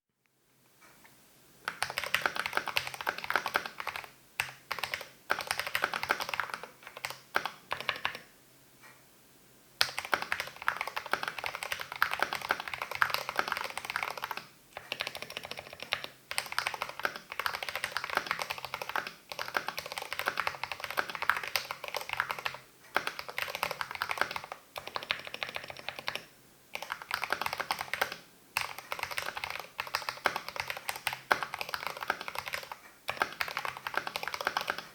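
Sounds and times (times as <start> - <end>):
typing on mechanical keyboard: 1.7 - 8.3, 9.8 - 34.9.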